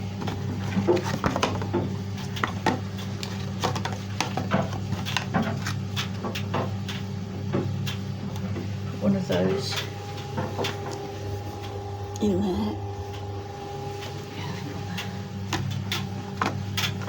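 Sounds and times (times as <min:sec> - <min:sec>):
steady low hum: 0:00.0 - 0:17.0.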